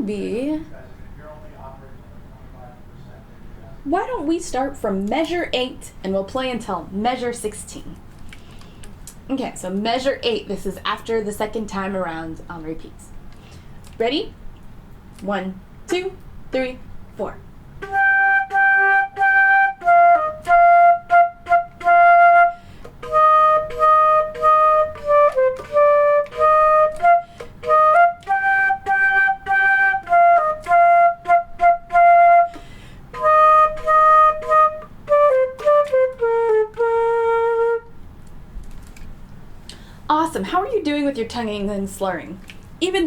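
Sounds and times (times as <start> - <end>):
solo flute melody: 17.8 - 38.0.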